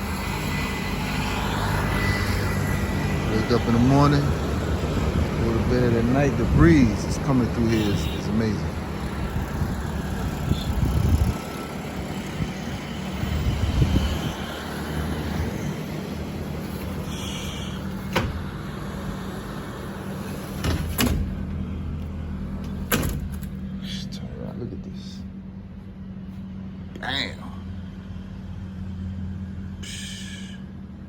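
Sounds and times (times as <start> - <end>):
low mechanical hum: 0.0 - 31.0
breeze buffeting microphone: 3.3 - 15.6.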